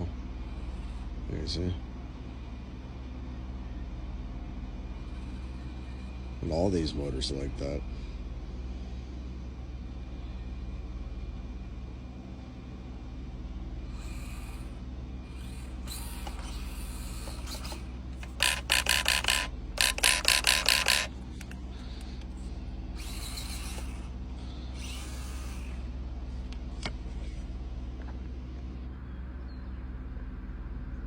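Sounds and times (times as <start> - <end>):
small electric motor whirring: 5.0 - 6.5, 13.8 - 26.0.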